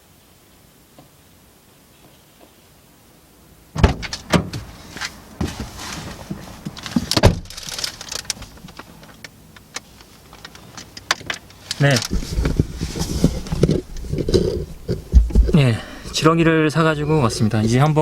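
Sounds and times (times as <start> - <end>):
car door shutting: 3.8 - 4.7, 5.4 - 7.6
clicks and rustling: 3.9 - 15.6.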